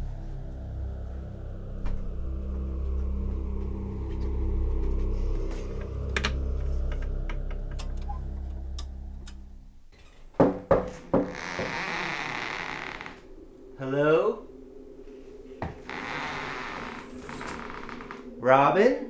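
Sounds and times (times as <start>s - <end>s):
low ominous drone: 0.0s - 10.3s, 11.2s - 19.0s
knocks on a door: 10.4s - 11.3s.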